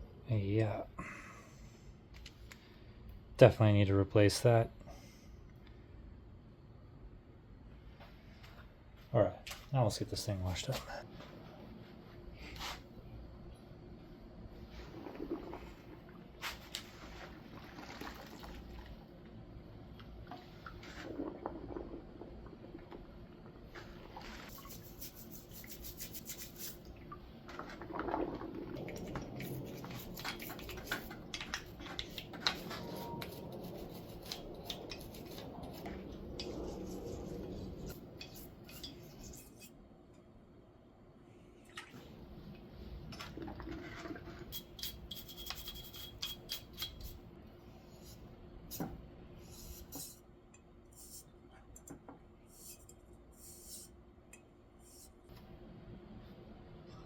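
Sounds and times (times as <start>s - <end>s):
liquid splashing: 14.8s - 19.0s.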